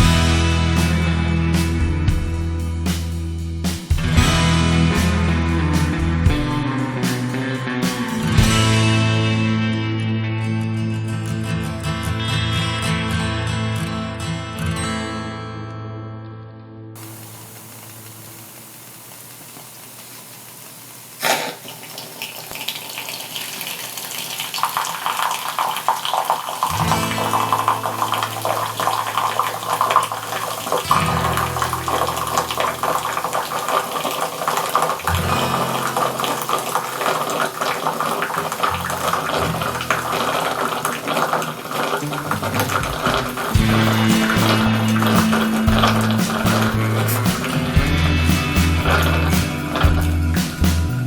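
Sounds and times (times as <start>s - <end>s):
water bubbling in coffee maker: 17.0s - 48.2s.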